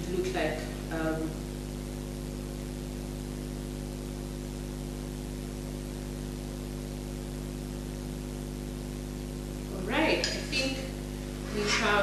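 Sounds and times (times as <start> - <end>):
steady tonal hum: 0.0 - 1.6, 9.6 - 12.0.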